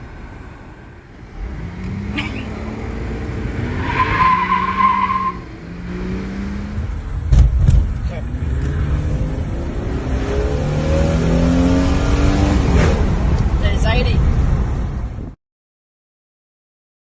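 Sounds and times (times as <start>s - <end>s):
car engine revving: 0.0s - 13.6s.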